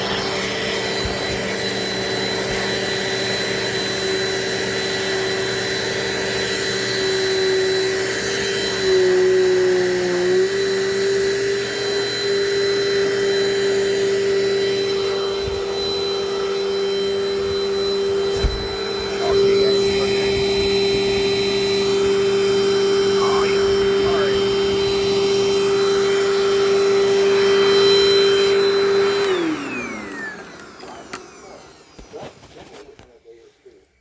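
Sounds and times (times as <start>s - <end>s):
vacuum cleaner motor whine: 0.0s - 34.0s.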